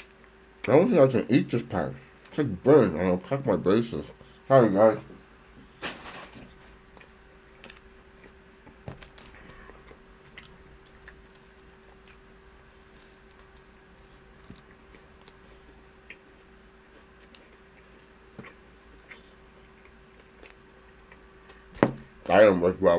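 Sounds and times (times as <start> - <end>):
faint steady hum: 0.0 - 22.9
person chewing food: 6.9 - 21.7.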